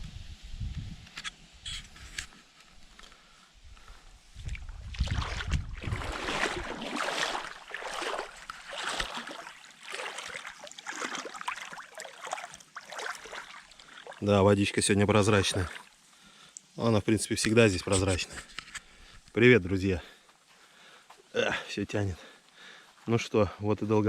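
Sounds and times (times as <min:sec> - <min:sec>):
water sloshing and splashing: 0:04.4 - 0:16.0.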